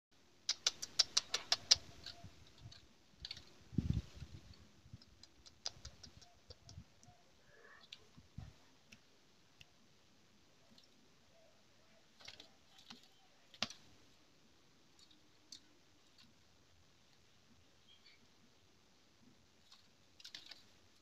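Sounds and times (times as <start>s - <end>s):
sharp clicks: 0.4s - 4.0s, 5.0s - 7.1s.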